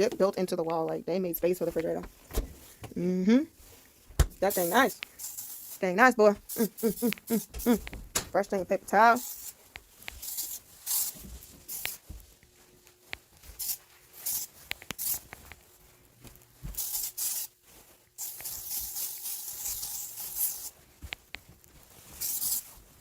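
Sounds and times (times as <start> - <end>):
paper towel rustling and rubbing: 3.5 - 7.8, 8.5 - 23.0
disinfectant spray hissing: 4.4 - 7.9, 9.0 - 12.0, 13.6 - 15.2, 16.7 - 17.6, 18.2 - 20.7, 22.2 - 22.7.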